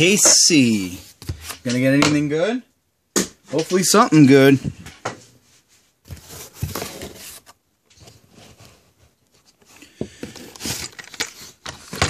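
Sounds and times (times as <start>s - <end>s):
cardboard rustling and scraping: 6.0s - 12.0s.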